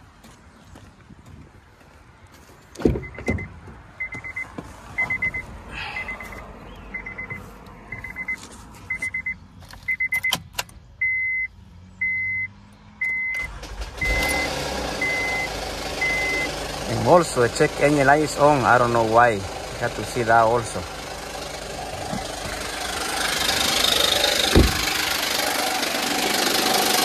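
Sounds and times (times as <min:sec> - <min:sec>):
dashboard warning chime beeping: 0:03.0 - 0:10.4, 0:11.0 - 0:16.6
heavy thud: 0:24.5 - 0:25.0.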